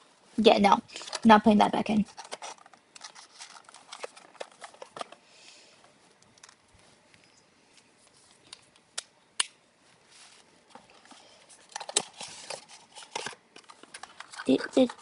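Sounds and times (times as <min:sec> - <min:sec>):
packaging crinkling: 0:00.9 - 0:05.2, 0:10.7 - 0:15.0.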